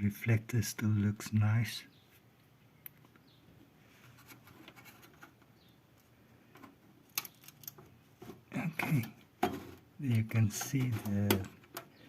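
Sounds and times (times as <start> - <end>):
light scratches: 3.9 - 5.4
small clicks of projector parts: 6.6 - 7.9.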